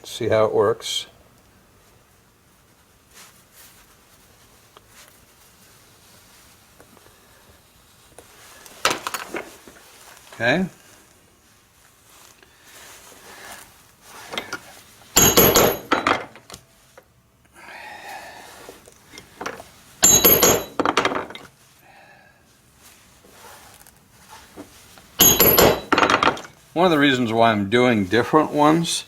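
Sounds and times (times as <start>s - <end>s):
tool handling: 8.6s - 10.4s, 13.5s - 16.6s, 18.7s - 21.6s, 24.3s - 26.6s
mallet striking metal chisel: 15.2s - 16.1s, 20.0s - 20.8s, 25.2s - 26.0s.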